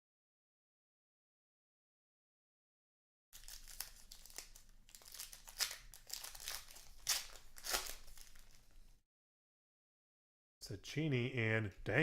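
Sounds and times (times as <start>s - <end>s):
plastic wrapper crinkling and tearing: 3.4s - 9.0s.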